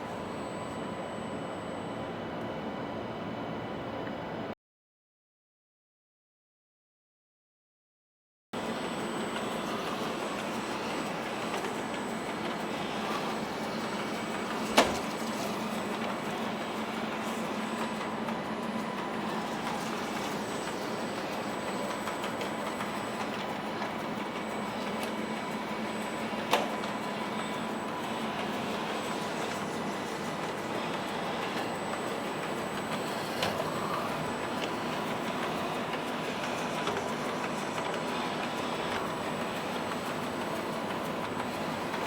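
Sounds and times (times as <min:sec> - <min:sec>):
robot vacuum whirring: 0:26.4 - 0:37.1.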